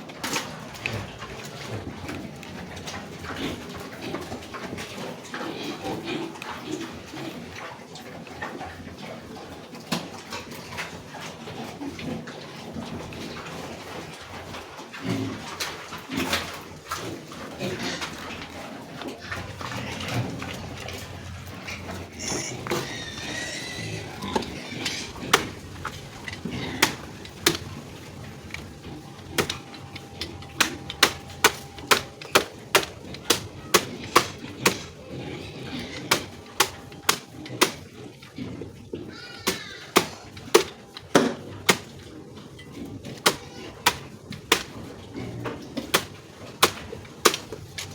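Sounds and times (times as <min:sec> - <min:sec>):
sharp knocks: 0:25.3 - 0:27.7, 0:29.3 - 0:34.9, 0:39.5 - 0:41.9, 0:43.2 - 0:44.8.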